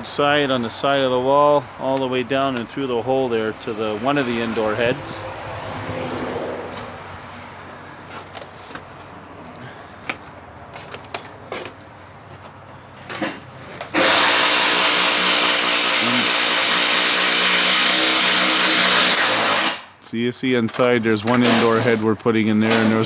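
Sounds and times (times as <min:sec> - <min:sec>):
electric power tool running: 0:13.0 - 0:20.0, 0:21.3 - 0:23.0.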